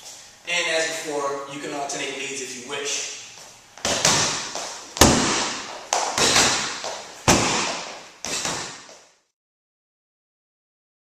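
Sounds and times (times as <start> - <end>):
punches and kicks on heavy bag: 3.8 - 8.9.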